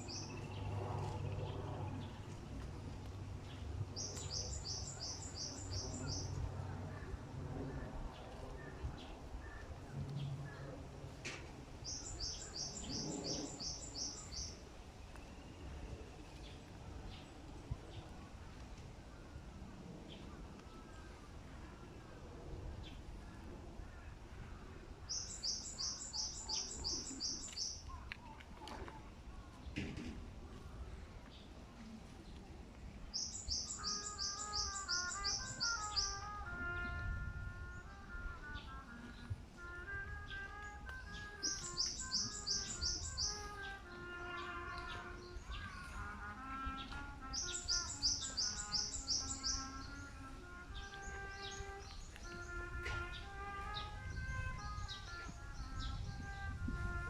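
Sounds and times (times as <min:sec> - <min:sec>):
songbird calling: 0:00.0 - 0:02.2, 0:03.4 - 0:06.4, 0:08.6 - 0:16.0, 0:25.1 - 0:28.4, 0:33.1 - 0:37.1, 0:40.2 - 0:56.5
birds chirping: 0:00.0 - 0:06.4, 0:07.0 - 0:18.1, 0:25.1 - 0:28.4, 0:33.0 - 0:56.9
soft melody: 0:33.5 - 0:57.0.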